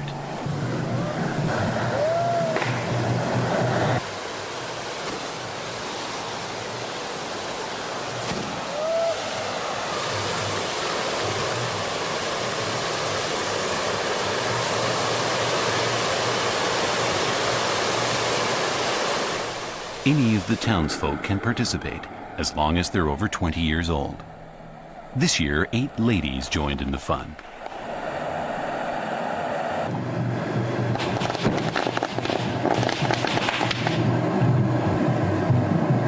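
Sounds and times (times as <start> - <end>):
firework spouting hiss: 7.8 - 20.6.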